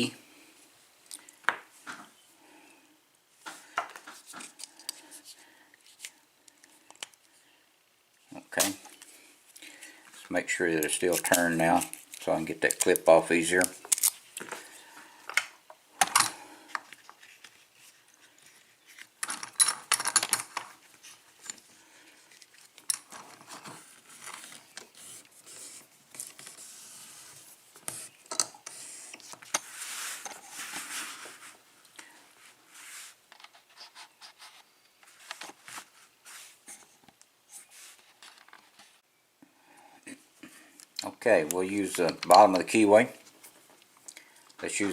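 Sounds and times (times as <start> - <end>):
scraping and rubbing: 22.2 - 31.6.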